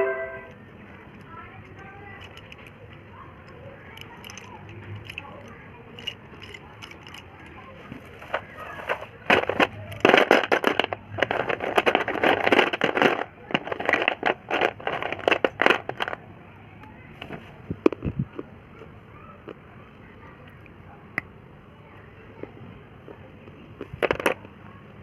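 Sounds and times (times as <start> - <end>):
box crackling and crunching: 7.8 - 16.2.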